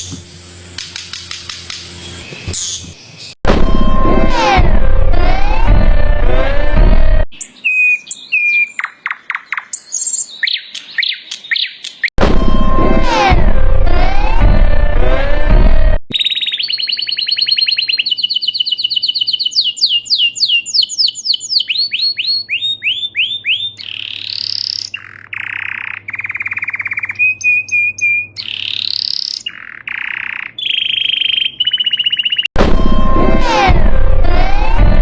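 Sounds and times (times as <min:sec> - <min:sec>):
loud sound: 0:03.4 - 0:07.2, 0:12.2 - 0:16.0, 0:32.6 - 0:35.0
bird calls: 0:16.1 - 0:32.5.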